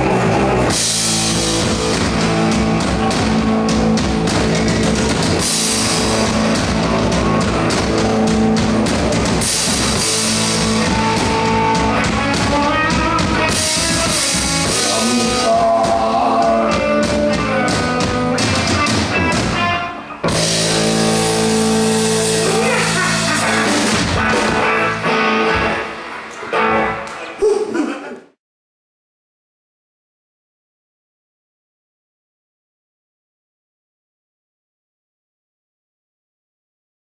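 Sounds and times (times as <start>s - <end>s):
electric guitar lead line: 0.0s - 27.4s
live rock band playing: 0.0s - 27.4s.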